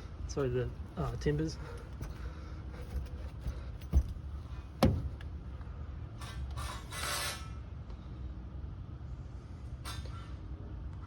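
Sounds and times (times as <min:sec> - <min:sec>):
sharp knocks on timber: 0:03.9 - 0:05.3.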